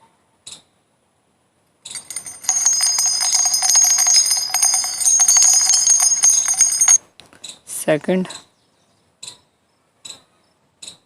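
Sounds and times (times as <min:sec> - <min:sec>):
jingle bells shaking: 0:01.9 - 0:07.0.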